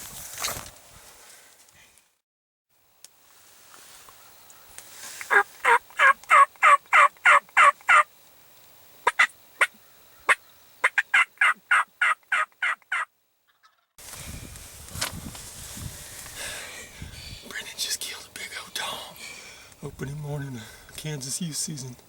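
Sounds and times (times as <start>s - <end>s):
turkey yelping: 5.3s - 8.1s, 9.0s - 13.8s.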